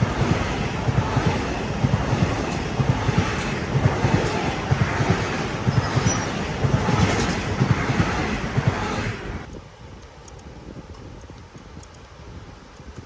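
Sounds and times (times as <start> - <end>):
low thumps of train: 0.0 - 9.5
train wheels rumbling on rails: 0.0 - 9.5.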